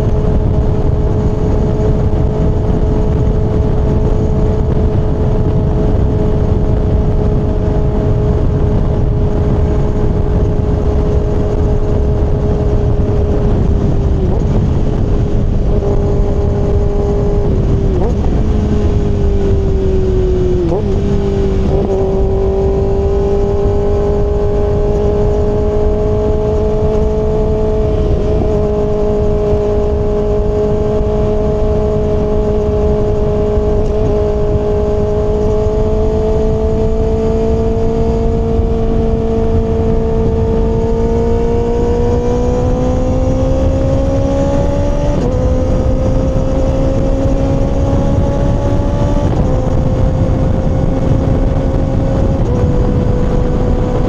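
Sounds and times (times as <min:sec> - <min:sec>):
motorcycle engine cruising: 0:00.0 - 0:54.0
wind noise rumbling: 0:00.0 - 0:54.0.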